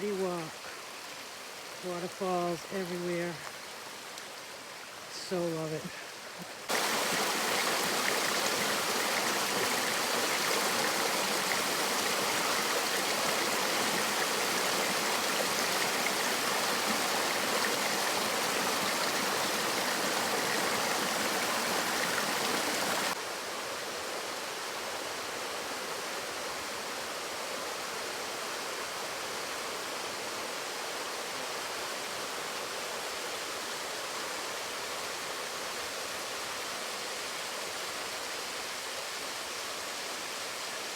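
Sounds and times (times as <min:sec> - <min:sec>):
water pouring over waterfall: 0:06.7 - 0:23.2.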